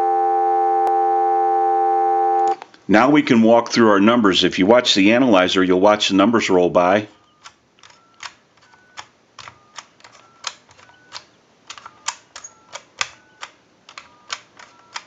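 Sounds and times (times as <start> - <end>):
telephone button clicks: 7.4 - 15.0.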